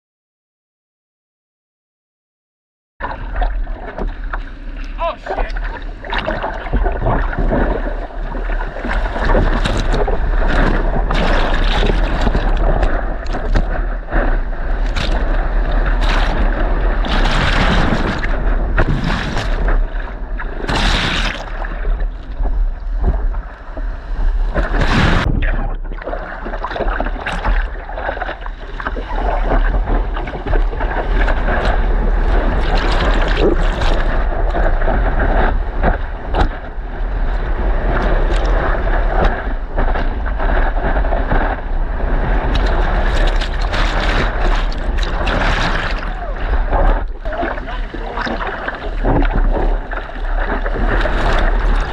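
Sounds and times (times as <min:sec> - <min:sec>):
churning lake surf: 0:03.0 - 0:51.9
water sloshing against surfboard: 0:03.0 - 0:51.9
water splashes: 0:03.0 - 0:51.9
wind buffeting microphone: 0:26.9 - 0:51.9.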